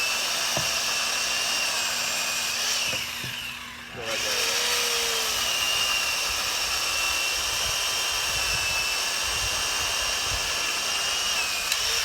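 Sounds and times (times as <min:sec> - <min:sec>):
electric chainsaw whining: 0:00.0 - 0:12.0
chain cutting branch: 0:11.5 - 0:12.0.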